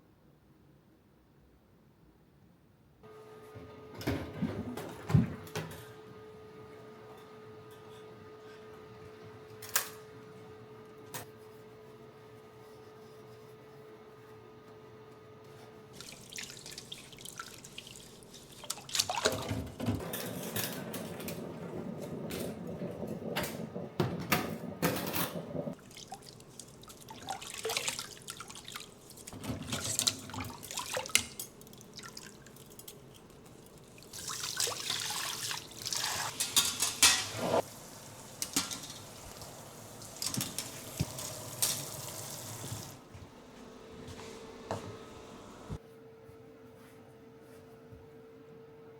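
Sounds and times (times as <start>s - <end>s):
tap water splashing in sink: 16.0s - 19.8s, 25.8s - 32.8s, 34.0s - 36.3s, 38.3s - 43.0s.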